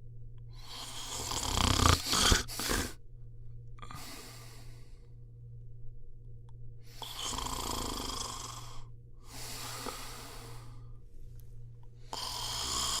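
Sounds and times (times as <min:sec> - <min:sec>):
person snoring: 0:00.6 - 0:03.0, 0:03.8 - 0:04.9, 0:06.8 - 0:10.9, 0:12.0 - 0:13.0.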